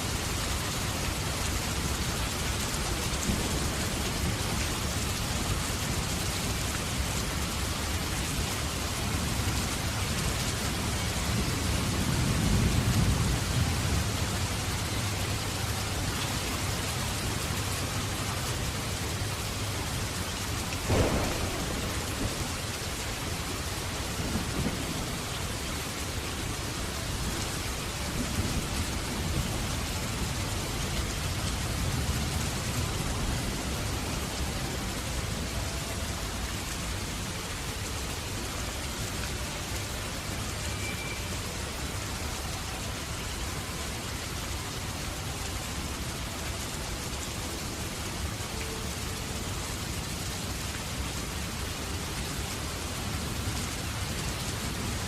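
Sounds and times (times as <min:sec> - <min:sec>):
heavy rain: 0:00.0 - 0:55.0
thunder rumbling: 0:20.8 - 0:25.7
thunderclap: 0:20.9 - 0:22.7.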